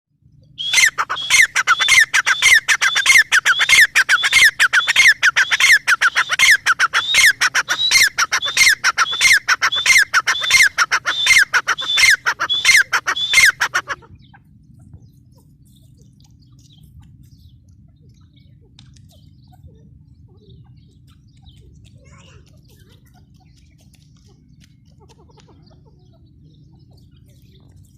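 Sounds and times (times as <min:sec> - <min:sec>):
faint low hum: 0:00.2 - 0:27.9
francolin calling: 0:00.6 - 0:14.4.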